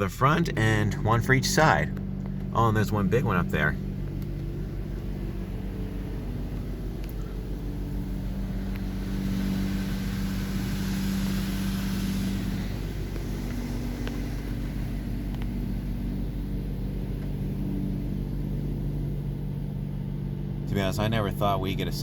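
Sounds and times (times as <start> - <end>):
steady low hum: 0.0 - 22.0
water spray hissing on car: 4.6 - 19.1.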